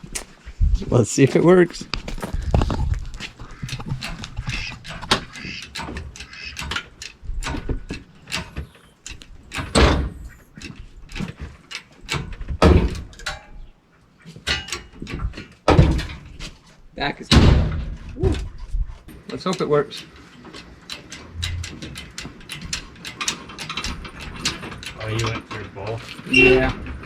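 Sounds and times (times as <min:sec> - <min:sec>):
chains and hoist clanking: 0:19.1 - 0:27.0
heavy metal bangs: 0:21.2 - 0:22.2.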